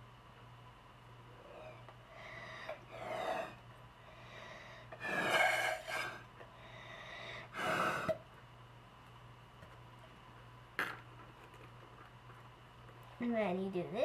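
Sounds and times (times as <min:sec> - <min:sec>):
blowing through straw into slime: 0:05.0 - 0:06.2.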